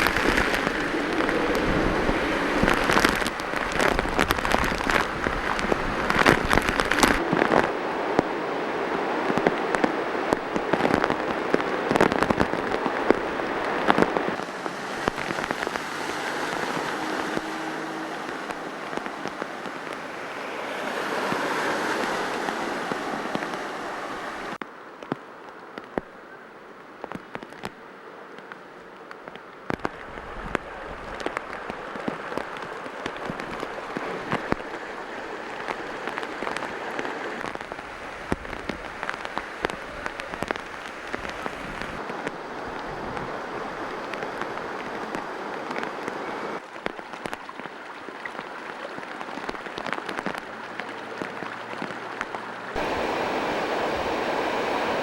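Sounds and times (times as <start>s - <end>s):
heavy rain hissing: 0.0s - 24.6s, 29.8s - 46.7s, 49.0s - 55.0s
rain drops hitting: 0.0s - 55.0s.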